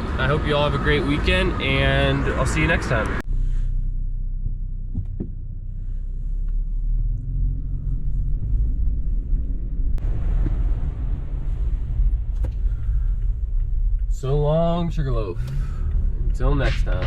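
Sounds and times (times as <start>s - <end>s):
road and wind noise hiss: 0.0s - 3.6s
truck engine rumble: 0.0s - 17.0s.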